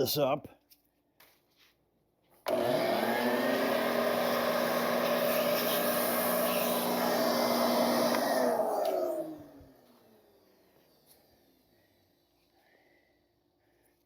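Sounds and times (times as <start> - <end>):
vacuum cleaner whining: 2.4 - 12.0.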